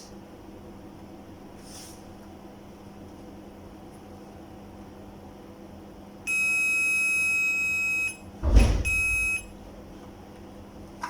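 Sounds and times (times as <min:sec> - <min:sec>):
multimeter buzzer beeping: 0:06.3 - 0:08.2, 0:08.8 - 0:09.5
thump: 0:08.4 - 0:09.0.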